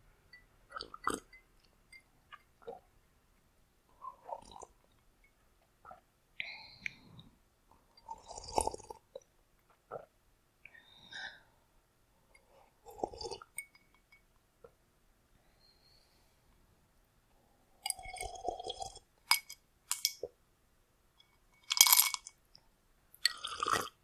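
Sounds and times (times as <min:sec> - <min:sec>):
person sipping and gulping water: 0:00.7 - 0:01.4, 0:03.9 - 0:05.0, 0:06.8 - 0:10.2, 0:12.7 - 0:13.6, 0:17.8 - 0:19.2, 0:23.2 - 0:24.0.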